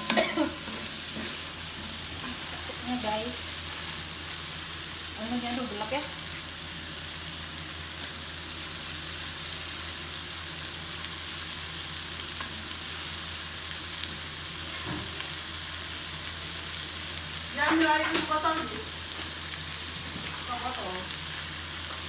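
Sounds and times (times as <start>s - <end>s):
food frying in hot oil: 0.0s - 22.0s.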